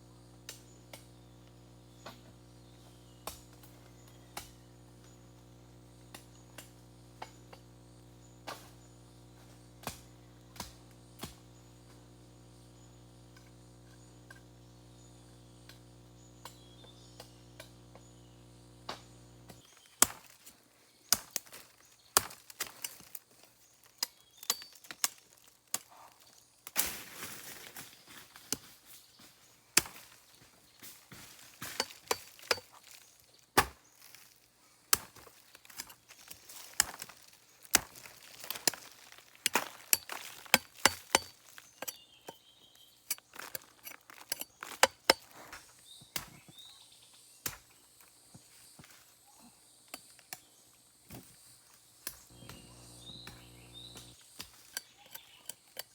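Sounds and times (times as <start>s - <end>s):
blade chopping: 36.7s - 42.4s.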